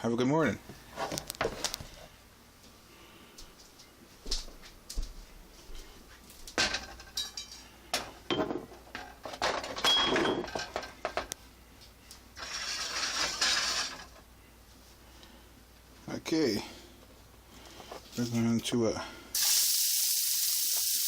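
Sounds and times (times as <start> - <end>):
pots and pans clattering: 6.6 - 11.3, 12.4 - 14.2
steady hiss: 18.0 - 21.0.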